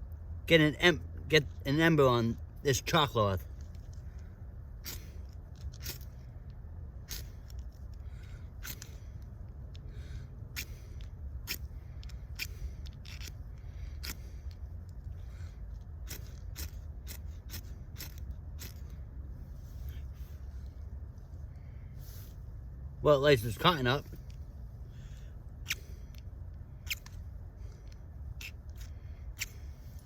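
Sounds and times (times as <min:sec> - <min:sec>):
ferro rod scraped with striker: 0:07.0 - 0:08.0, 0:10.6 - 0:15.1, 0:15.7 - 0:19.0, 0:25.6 - 0:30.0.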